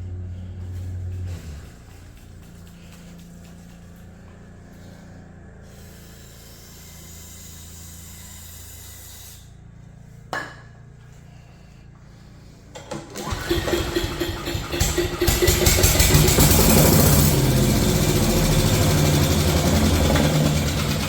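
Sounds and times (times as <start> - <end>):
steady low hum: 0.0 - 12.8
small engine firing: 12.8 - 21.0.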